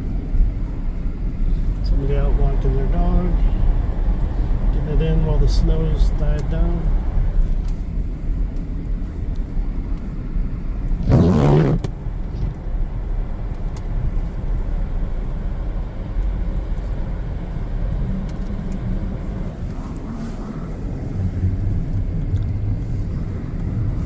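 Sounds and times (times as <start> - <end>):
car cabin driving rumble: 0.0 - 24.0
rush of noise: 10.9 - 12.5.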